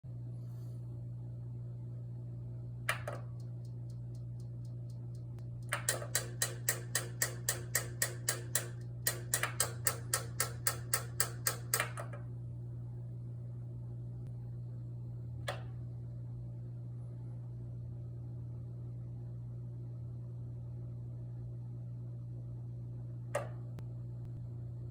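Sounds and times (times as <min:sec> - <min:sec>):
steady low hum: 0:00.1 - 0:24.9
heater clicking rapidly: 0:02.9 - 0:12.0.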